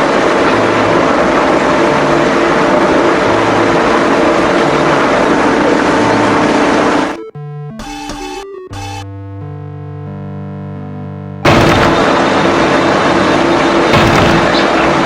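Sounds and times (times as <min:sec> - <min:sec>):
heavy cutting machine running: 0:11.4 - 0:15.0.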